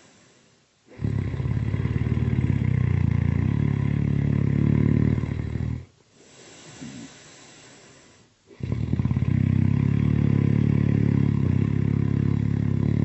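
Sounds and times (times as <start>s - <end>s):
quiet breathing: 0.0s - 13.0s
loud rattling snore: 0.9s - 5.9s, 8.5s - 13.0s.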